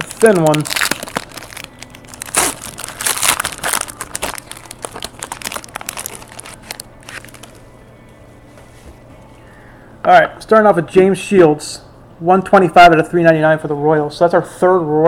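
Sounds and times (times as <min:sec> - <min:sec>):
packaging crinkling: 0:00.0 - 0:07.6.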